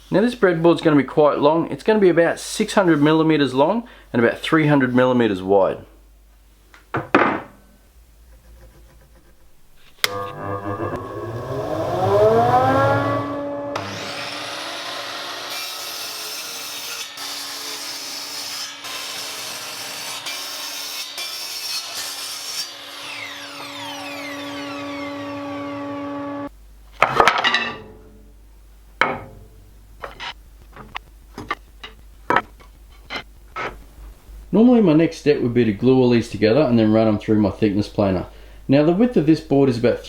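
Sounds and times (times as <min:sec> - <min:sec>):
power saw cutting wood: 0:10.0 - 0:26.5
wooden boards clattering: 0:27.0 - 0:27.9.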